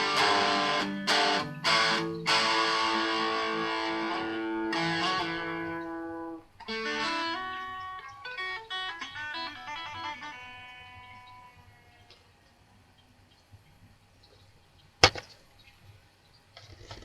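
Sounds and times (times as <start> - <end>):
guitar chords ringing: 0.0 - 11.9
picked guitar notes: 0.0 - 12.2.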